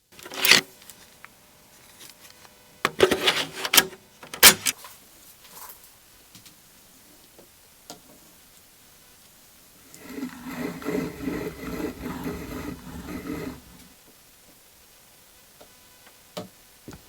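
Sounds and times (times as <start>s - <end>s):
floppy drive clunk: 2.9s - 4.7s
floppy drive clacking: 9.9s - 13.9s.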